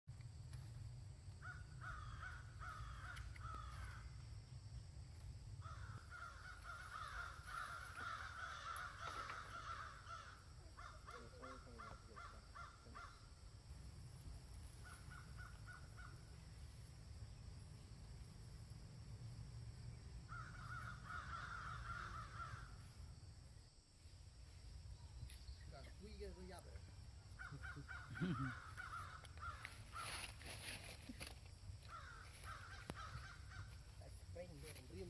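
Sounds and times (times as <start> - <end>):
harsh animal calls: 5.6 - 13.4, 20.3 - 22.8, 27.2 - 30.4, 31.8 - 33.9.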